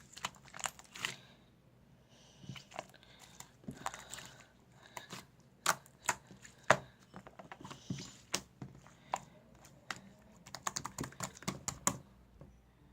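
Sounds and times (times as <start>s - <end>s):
slime squished by hand: 0.0s - 1.3s.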